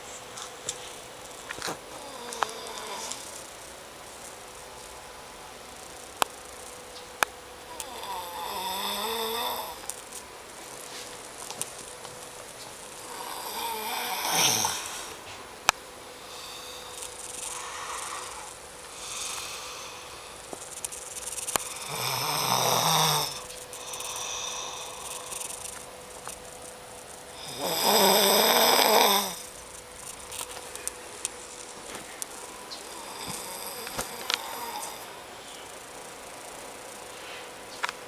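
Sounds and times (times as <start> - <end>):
person snoring heavily: 1.7 - 3.4, 7.7 - 9.9, 12.9 - 15.2, 16.1 - 20.7, 21.3 - 25.8, 27.3 - 29.6, 32.8 - 35.3
quiet breaths: 10.7 - 37.9.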